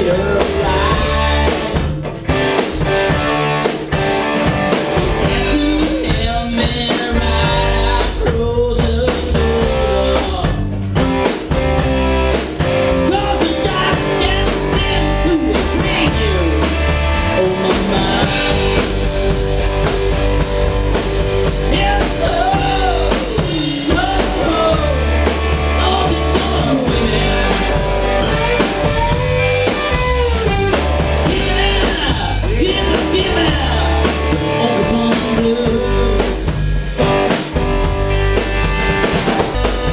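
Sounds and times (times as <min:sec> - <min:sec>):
drum kit: 0:00.0 - 0:39.9
electric guitar: 0:00.0 - 0:39.9
rock music: 0:00.0 - 0:39.9
sliding bending guitar lead line: 0:11.0 - 0:39.9.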